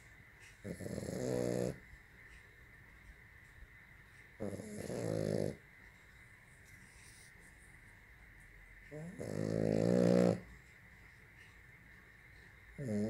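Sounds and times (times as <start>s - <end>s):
dog snoring: 0.6s - 1.8s, 4.4s - 5.6s, 8.9s - 10.6s, 12.8s - 13.0s.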